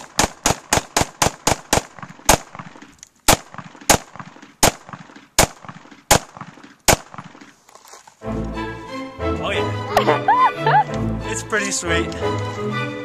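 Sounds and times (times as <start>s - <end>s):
pistol shots with echo: 0.0s - 7.4s.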